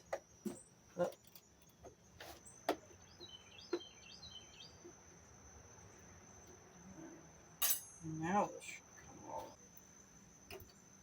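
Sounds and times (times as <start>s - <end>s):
small bird chirping: 2.4s - 5.0s.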